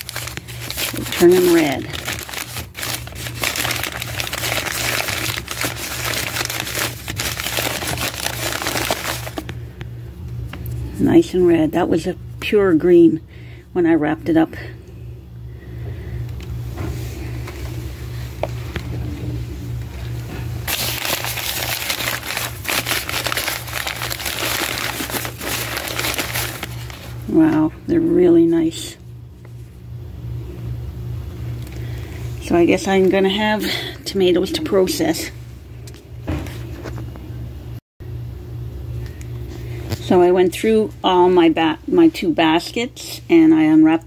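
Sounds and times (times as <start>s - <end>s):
newspaper crinkling and rustling: 0.0s - 9.6s, 20.6s - 27.2s
steady low hum: 0.0s - 44.0s.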